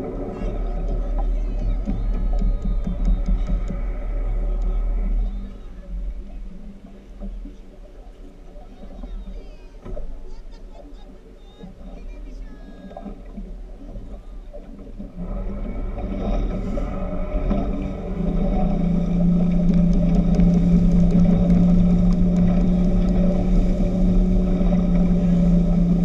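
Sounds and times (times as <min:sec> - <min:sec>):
speedboat engine droning: 0:00.0 - 0:26.0.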